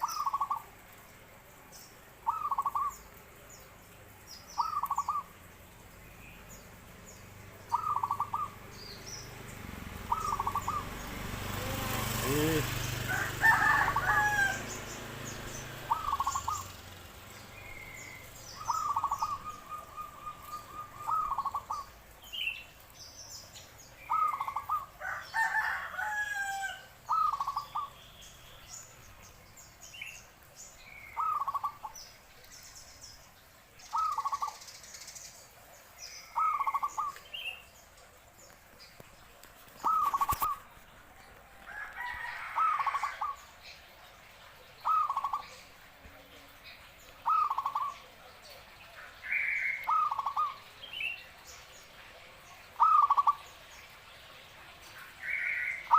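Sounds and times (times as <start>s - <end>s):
bird rattling calls: 10.0s - 10.9s, 11.8s - 17.0s, 39.7s - 40.7s.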